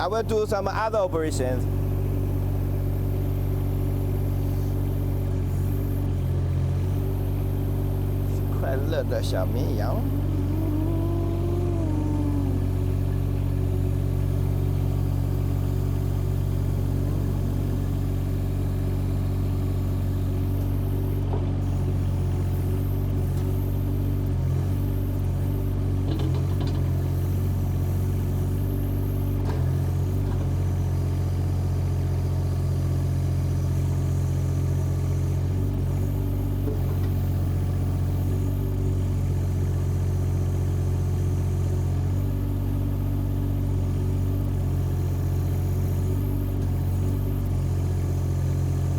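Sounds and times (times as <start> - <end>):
excavator diesel engine running: 0.0 - 33.0.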